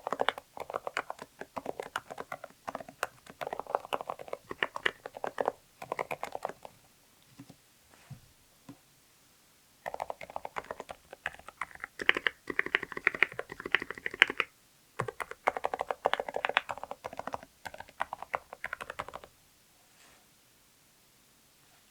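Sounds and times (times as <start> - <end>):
typing on mechanical keyboard: 0.0 - 6.8, 9.9 - 19.3.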